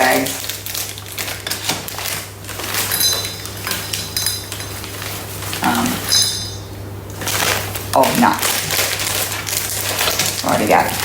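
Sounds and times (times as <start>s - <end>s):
nuts rattling into a bowl: 0.0s - 6.6s
bowl ringing clinks: 2.7s - 6.8s.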